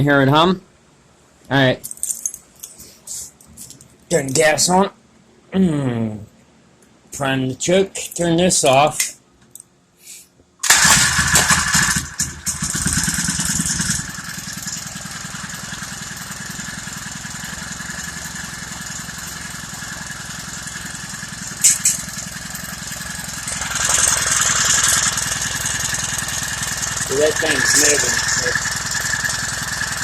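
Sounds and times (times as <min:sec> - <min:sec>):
small engine running: 0:10.6 - 0:30.0.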